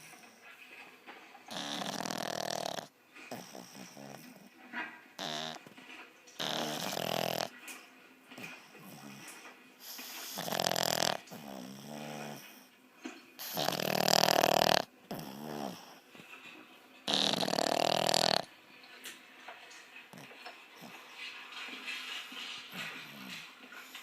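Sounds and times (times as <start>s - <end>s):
dog snoring: 1.4s - 4.6s, 5.2s - 5.8s, 6.4s - 7.7s, 8.4s - 12.7s, 13.4s - 16.3s, 17.0s - 18.6s, 20.1s - 21.3s, 22.7s - 24.0s.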